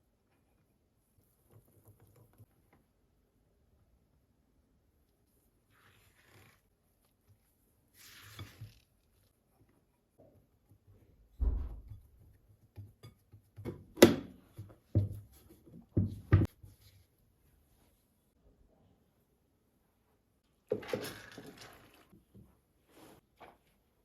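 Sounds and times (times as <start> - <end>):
soft rustle: 5.0 - 9.8
dull thump: 11.4 - 12.1.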